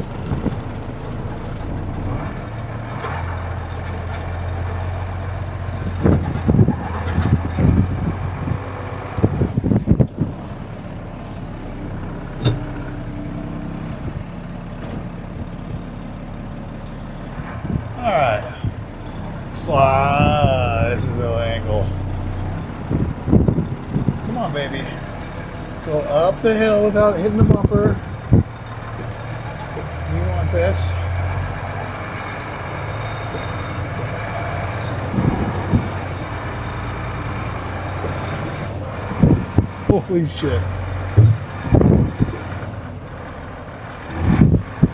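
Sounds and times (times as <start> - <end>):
truck diesel engine running: 0.0 - 44.9
low knocks: 12.4 - 13.0, 40.9 - 42.4.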